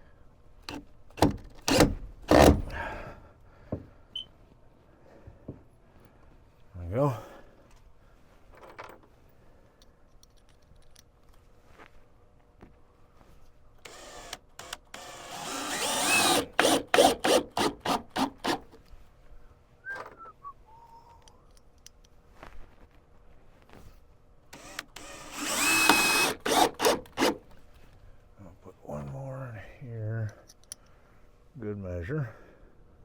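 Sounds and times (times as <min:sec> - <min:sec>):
cordless drill driving screws: 0:01.2 - 0:02.8, 0:13.8 - 0:18.8, 0:24.6 - 0:27.5.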